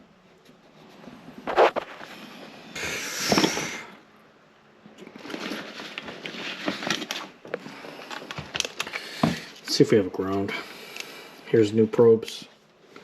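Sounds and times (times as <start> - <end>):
crackling and rustling: 0.3 - 3.9, 4.8 - 11.1
rustling hiss: 1.4 - 4.0.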